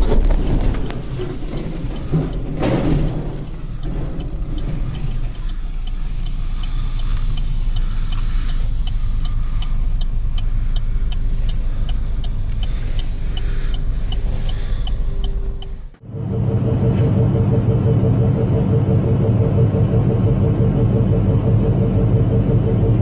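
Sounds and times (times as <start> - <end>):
faint steady hum: 0.0 - 16.0
rapid regular ticking: 0.0 - 16.0
large machine engine running: 0.0 - 23.0.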